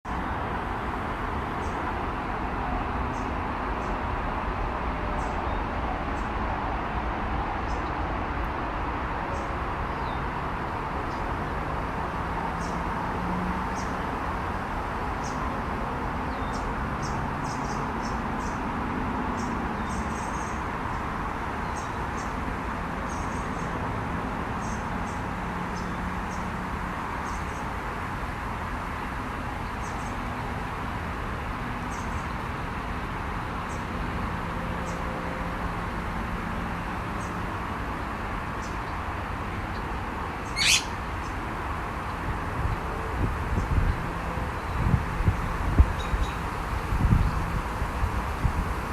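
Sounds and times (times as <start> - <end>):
steady rushing noise: 30.2 - 48.9
small birds chirping: 39.6 - 41.4.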